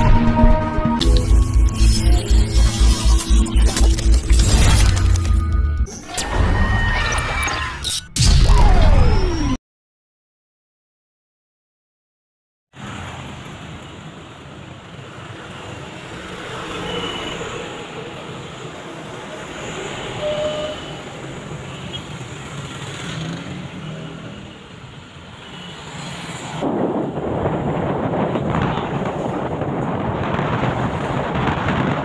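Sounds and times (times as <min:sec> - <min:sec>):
heavy rain roaring: 0:26.6 - 0:32.0.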